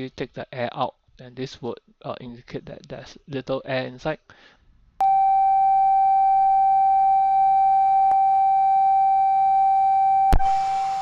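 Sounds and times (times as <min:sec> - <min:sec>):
steady pure tone: 0:05.0 - 0:11.0.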